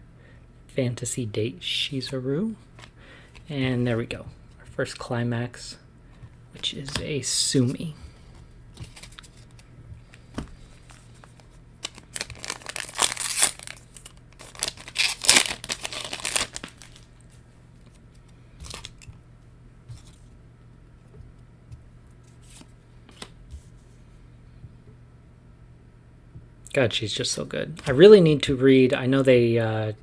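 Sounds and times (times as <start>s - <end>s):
foil wrapper tearing and crinkling: 11.8s - 17.2s.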